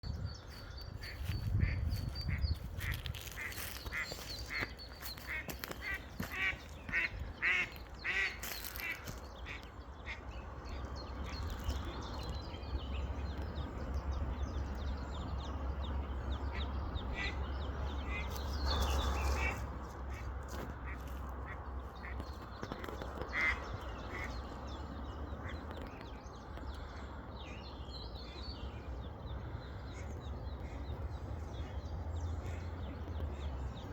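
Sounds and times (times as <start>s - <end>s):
steady low rumble: 0.0s - 33.9s
duck quacking: 5.3s - 9.0s.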